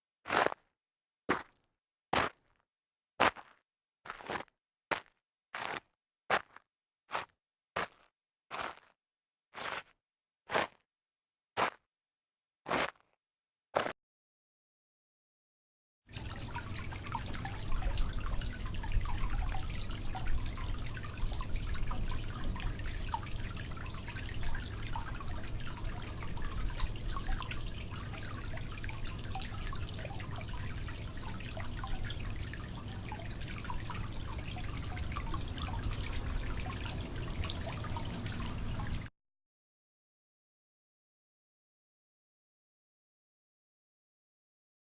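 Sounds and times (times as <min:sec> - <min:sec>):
running water splashing: 0:16.2 - 0:39.1.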